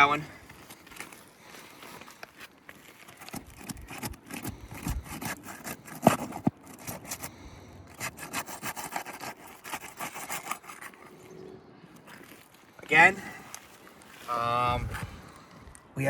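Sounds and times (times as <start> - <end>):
roof shingles scraping and crackling: 0.1 - 11.2.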